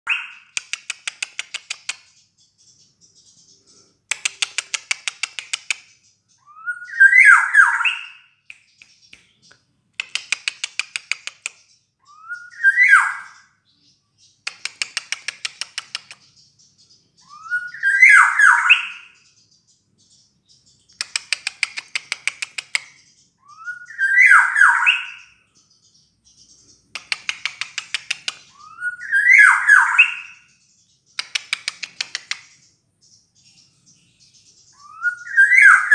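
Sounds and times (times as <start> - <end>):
bird call sweeping upward: 23.5 - 25.2, 34.7 - 35.9.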